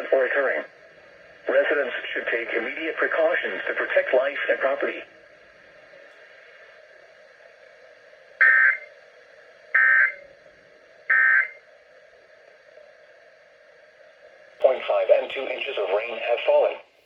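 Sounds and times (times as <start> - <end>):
faint radio hiss: 0.0 - 17.0.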